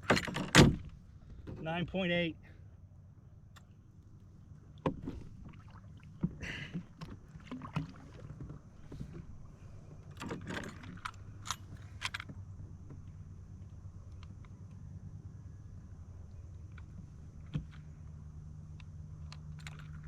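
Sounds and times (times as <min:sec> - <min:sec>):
gear knocking and rattling in kayak: 0:00.0 - 0:01.8, 0:04.8 - 0:14.8, 0:16.5 - 0:20.0.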